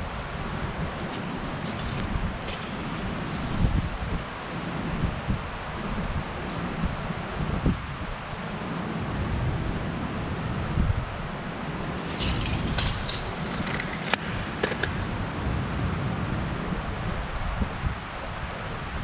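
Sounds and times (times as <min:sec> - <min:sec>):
wind buffeting microphone: 0:00.0 - 0:08.2.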